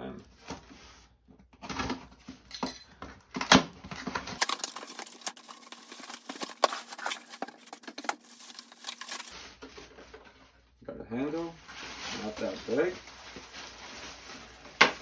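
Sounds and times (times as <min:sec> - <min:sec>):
cardboard packaging rustling: 0:03.3 - 0:10.6, 0:11.3 - 0:15.0.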